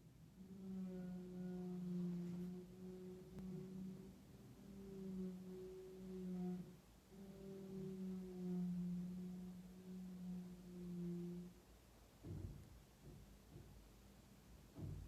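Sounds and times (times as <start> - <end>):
low droning hum: 0.0 - 15.0.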